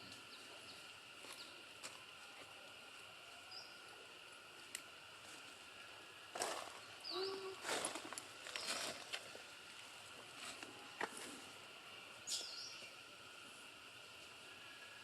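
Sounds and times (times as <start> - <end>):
insect drone: 0.0 - 15.0
rustle: 0.0 - 15.0.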